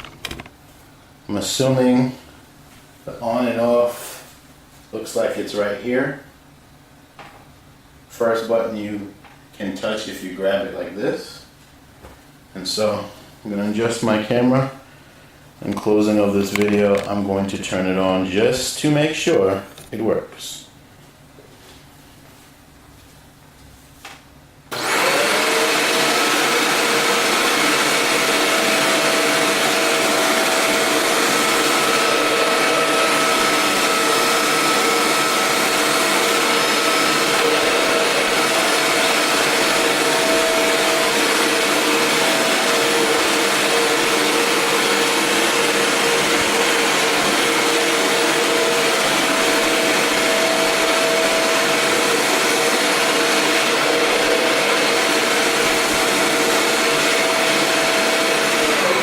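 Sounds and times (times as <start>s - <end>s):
vacuum cleaner motor whining: 24.7s - 59.0s.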